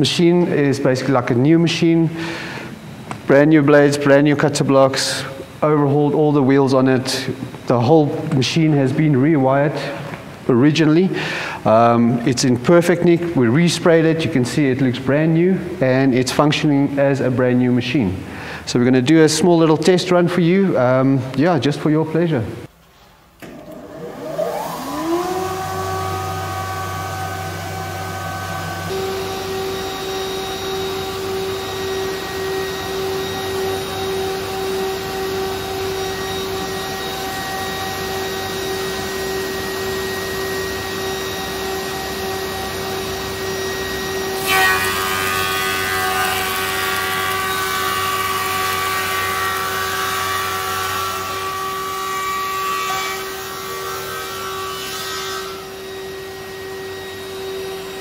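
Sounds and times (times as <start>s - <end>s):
planer motors whining: 23.4s - 58.0s
wood cutting through blades: 23.9s - 38.1s.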